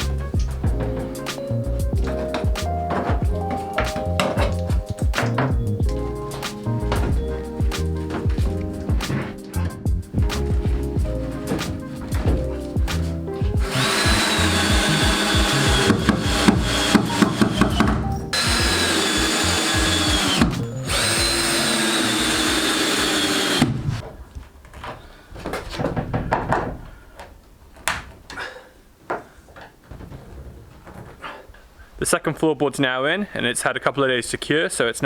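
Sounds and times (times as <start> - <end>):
knocks and scraping: 0.0 - 28.3, 29.1 - 31.9
power drill motor whine: 13.6 - 23.8.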